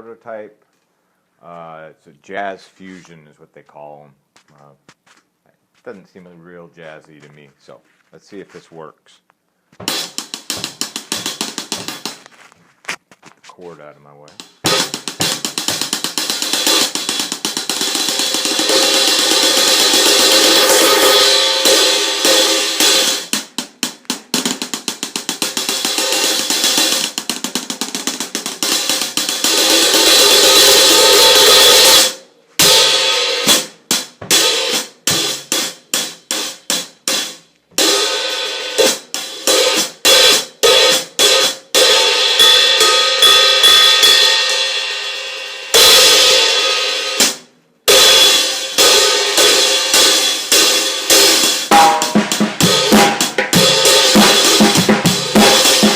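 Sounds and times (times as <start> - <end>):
cymbal struck with a stick: 51.7 - 52.8.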